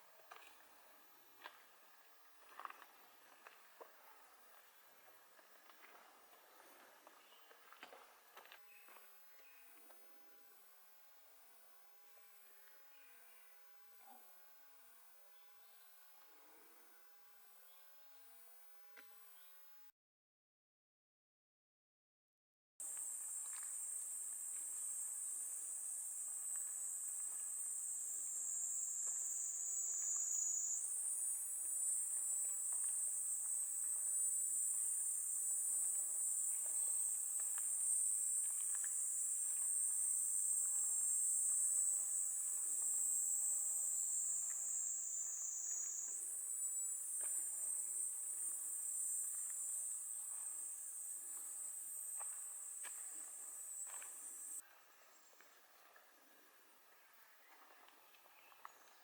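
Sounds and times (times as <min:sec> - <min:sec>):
faint footsteps on a path: 0:01.4 - 0:10.0, 0:51.2 - 0:56.0
cicadas buzzing: 0:22.8 - 0:54.6.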